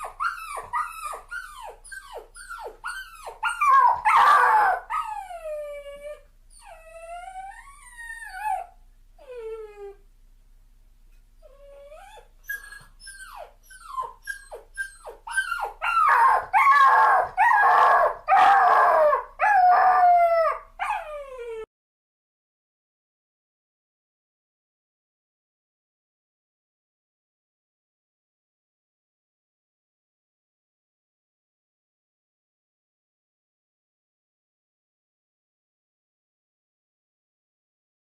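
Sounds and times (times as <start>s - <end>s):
puppy crying and whimpering: 0.0s - 10.0s, 11.4s - 21.7s.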